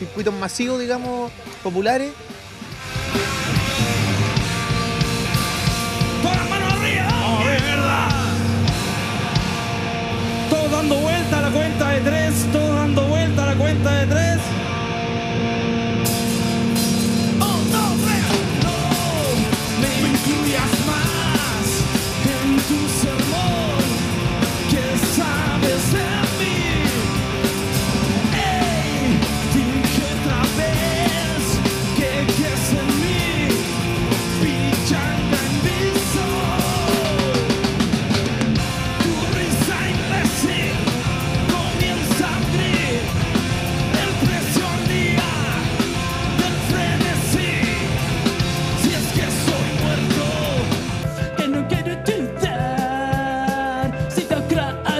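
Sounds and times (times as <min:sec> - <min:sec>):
steady drumming: 0:00.0 - 0:13.6, 0:16.0 - 0:51.2
punk rock band playing: 0:00.0 - 0:54.9
shouted vocals: 0:06.2 - 0:08.6.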